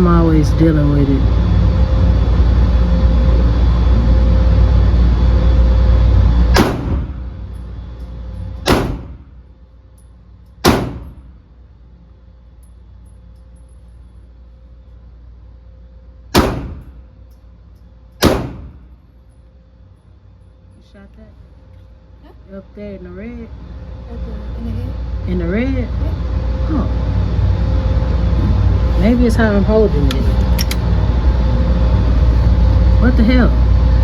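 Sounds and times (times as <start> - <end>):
loud steady rushing noise: 0.0 - 8.0, 10.6 - 11.4, 16.4 - 17.1
pistol shots: 6.6 - 7.2, 8.7 - 9.2, 10.6 - 11.2, 16.4 - 16.9, 18.2 - 18.8.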